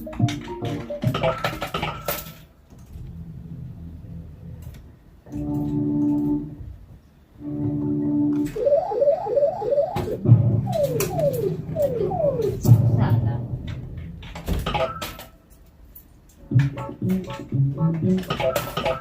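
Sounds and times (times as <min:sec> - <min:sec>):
electronic game music: 0:00.0 - 0:01.8, 0:07.4 - 0:13.2, 0:16.4 - 0:19.0
rising electronic bleeps: 0:08.3 - 0:13.0.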